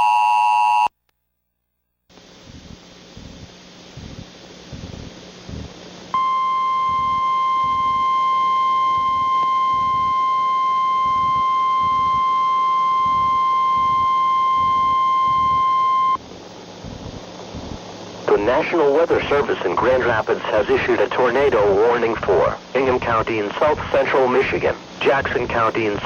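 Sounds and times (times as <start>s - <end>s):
steady electronic alert tone: 6.2s - 16.2s.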